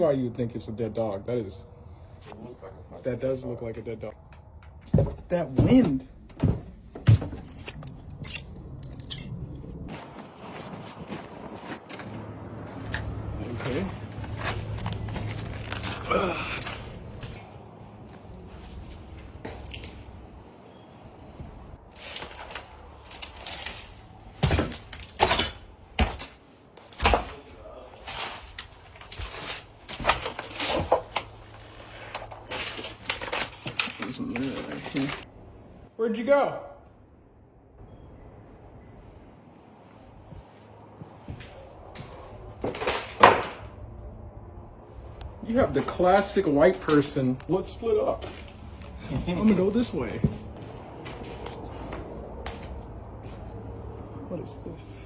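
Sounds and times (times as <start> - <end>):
knocks scrapes and rustles: 4.5 - 16.1, 21.4 - 35.3
sharp crunching crackles: 7.4 - 17.4.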